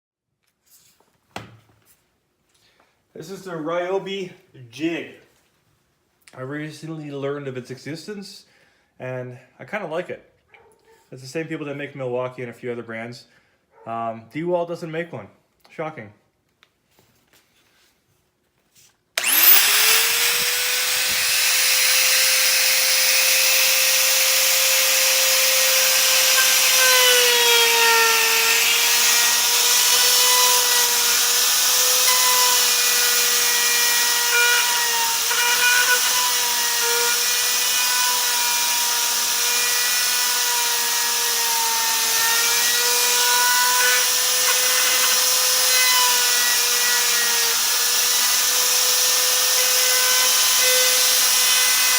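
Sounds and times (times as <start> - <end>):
electric router cutting wood: 19.2 - 51.9.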